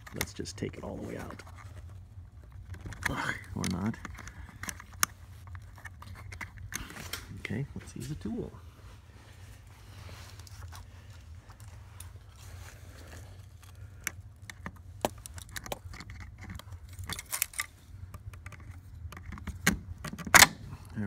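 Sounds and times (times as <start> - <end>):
steady low hum: 0.0 - 21.0
hand tool clicking and scraping: 2.7 - 7.0.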